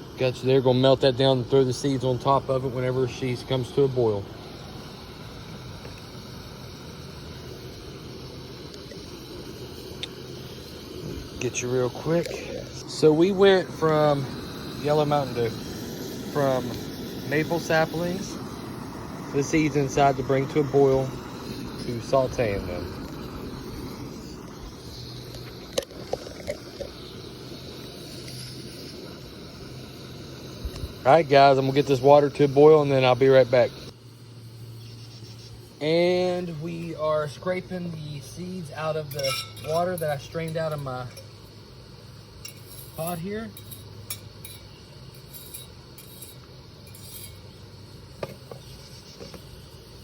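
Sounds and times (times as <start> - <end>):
faint hum: 0.0 - 50.0
utensil scraping metal pot: 38.9 - 41.4, 42.4 - 47.6
light metal clinks: 39.0 - 41.4, 42.4 - 47.5.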